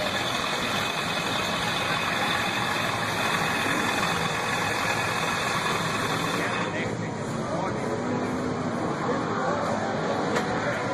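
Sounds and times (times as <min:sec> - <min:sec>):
drag-race car engine running: 0:00.0 - 0:07.5.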